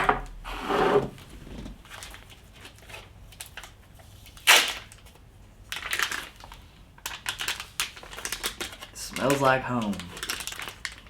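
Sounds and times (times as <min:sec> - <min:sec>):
plastic rustling and crackling: 0:01.2 - 0:11.0
plastic film tearing: 0:04.4 - 0:05.0, 0:05.7 - 0:11.0.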